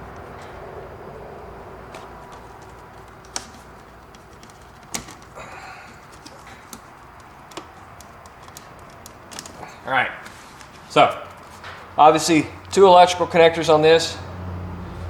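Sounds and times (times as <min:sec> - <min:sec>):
plastic clicks and handling noises: 0:01.8 - 0:11.8.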